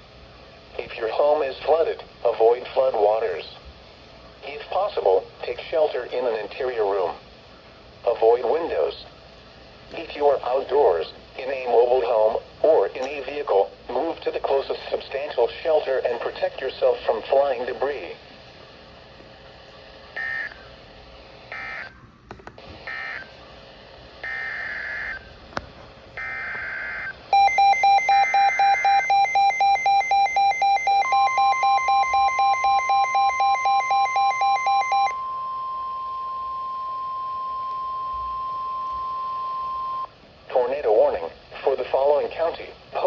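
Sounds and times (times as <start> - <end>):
rapid beeping alarm: 20.2 - 20.6, 21.5 - 21.9, 22.8 - 23.3, 24.2 - 25.3, 26.2 - 40.1
screechy digital data bursts: 24.2 - 25.2, 26.2 - 35.1
steady alert tone: 26.2 - 35.4.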